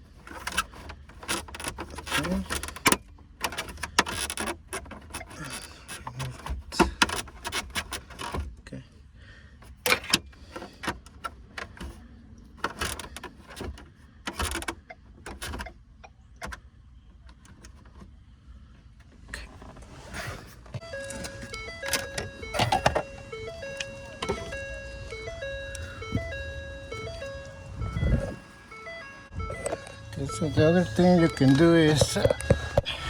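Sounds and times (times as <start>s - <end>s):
dash trim being pried: 20.7s - 33.0s.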